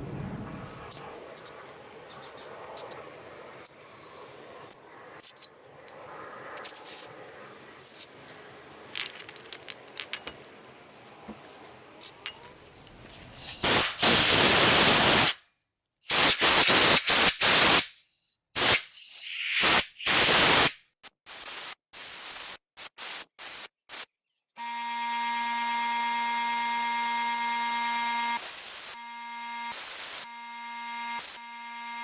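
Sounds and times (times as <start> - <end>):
hissing spray bursts: 13.6 - 15.4, 16.1 - 18.0, 18.6 - 24.1, 28.2 - 30.3
steady buzzing tone: 29.0 - 32.0.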